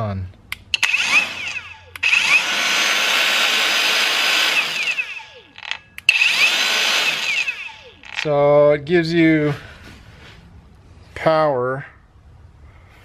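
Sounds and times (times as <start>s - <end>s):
angle grinder whining: 0.7s - 8.3s.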